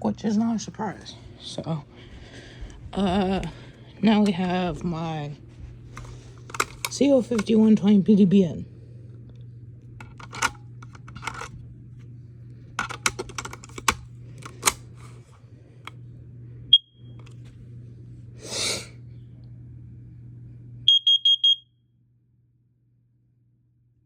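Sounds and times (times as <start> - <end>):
plastic clicks and knocks: 12.8 - 14.8
alarm high chirp: 20.9 - 21.6
high-pitched alarm beeps: 20.9 - 21.7.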